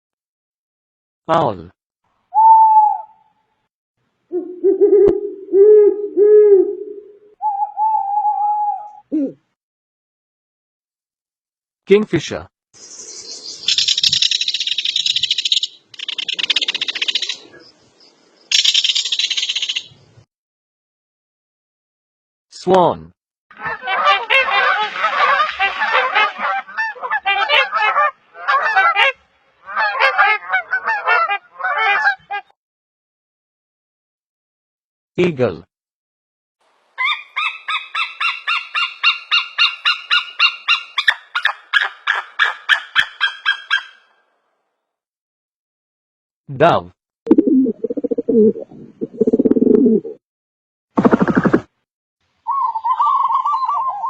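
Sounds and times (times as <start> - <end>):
eagle piping calls: 37.0 - 44.0, 52.5 - 54.0.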